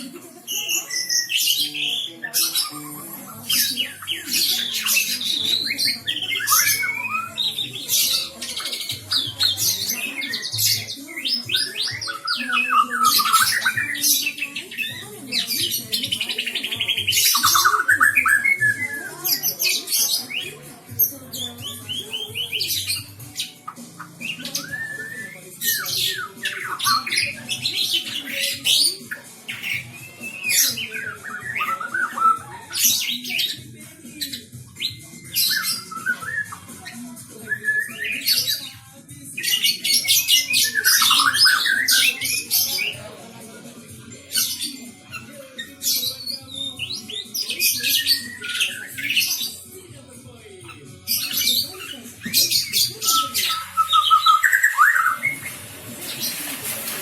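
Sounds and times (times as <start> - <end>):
songbird singing varied song: 3.8 - 20.5, 21.4 - 28.8.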